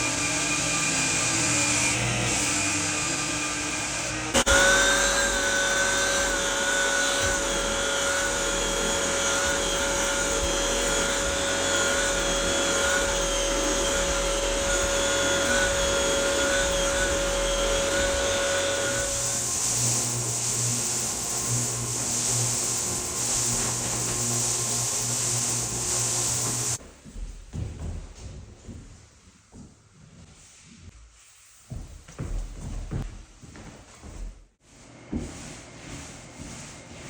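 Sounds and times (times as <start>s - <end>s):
floor sander vacuum whine: 0.0s - 26.8s.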